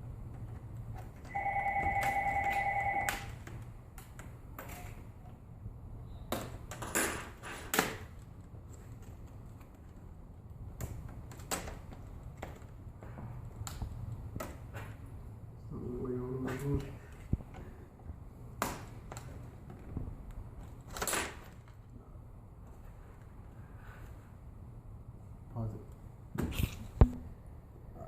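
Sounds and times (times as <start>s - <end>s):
electronic telephone ring: 1.3s - 3.4s.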